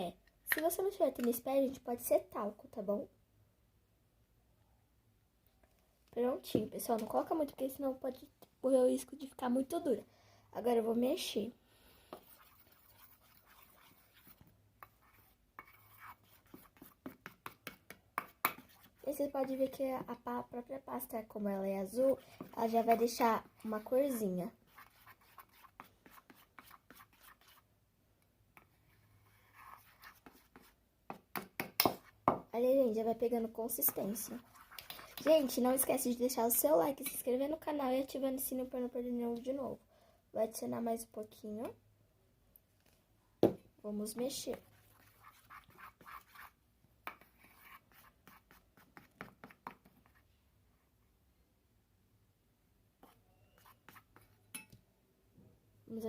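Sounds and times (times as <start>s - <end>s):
utensil stirring slime: 12.0s - 27.7s, 28.5s - 37.9s, 44.0s - 50.3s, 53.0s - 54.7s.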